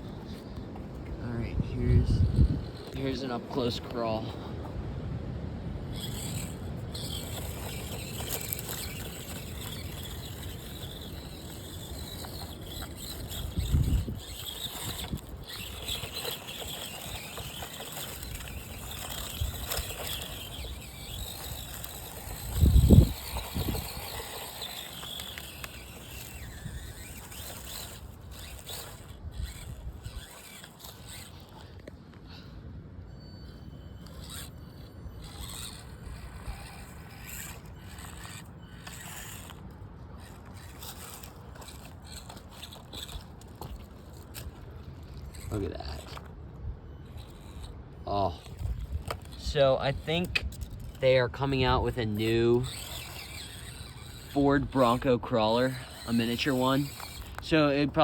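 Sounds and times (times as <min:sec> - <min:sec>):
small electric motor whining: 0:00.0 - 0:58.0
wind buffeting microphone: 0:01.1 - 0:03.5, 0:04.9 - 0:31.3.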